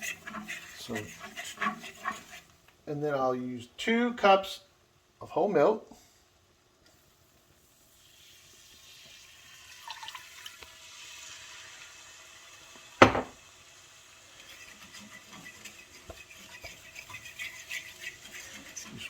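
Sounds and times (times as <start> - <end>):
milk sizzling in a hot skillet: 0.0 - 2.7, 6.9 - 19.0
light scraping and ticking: 0.0 - 2.8, 14.4 - 19.0
sharp knock: 13.0 - 13.4.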